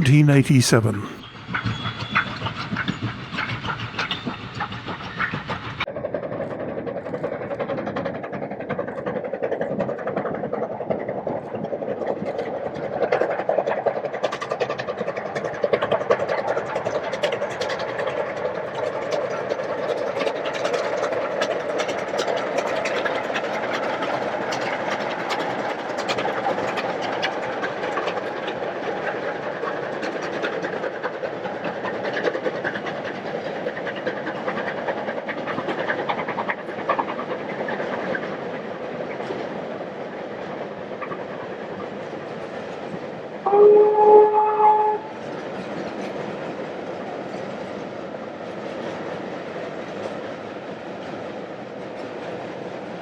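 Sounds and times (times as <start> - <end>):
steam train rumble and clatter: 0.8 - 43.6, 45.1 - 53.0
steam whistle: 43.4 - 45.1.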